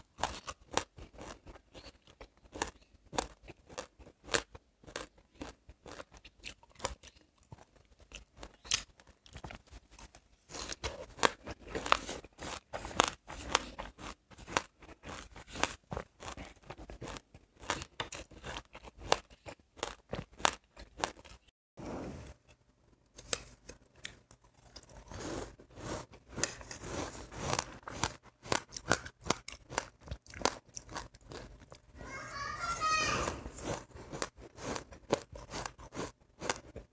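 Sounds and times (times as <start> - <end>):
chewing crunchy seeds: 0.0 - 21.5, 23.3 - 32.0, 33.2 - 36.9.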